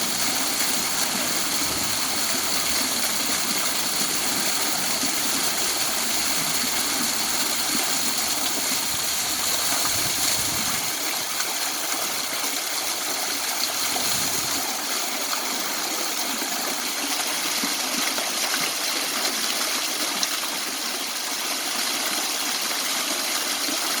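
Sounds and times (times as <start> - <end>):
waterfall rushing: 0.0 - 15.1.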